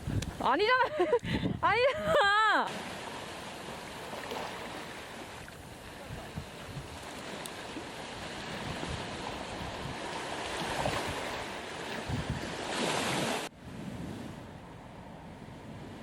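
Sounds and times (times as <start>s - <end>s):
wind on microphone: 0.0s - 2.2s, 5.3s - 16.0s
surf washing onto beach: 2.7s - 14.5s.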